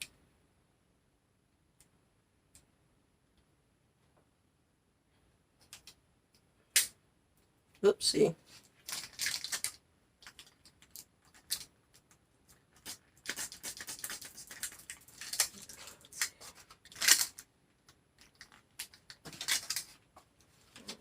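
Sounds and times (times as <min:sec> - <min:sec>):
rubber grip clicking and rubbing: 0:08.6 - 0:20.2.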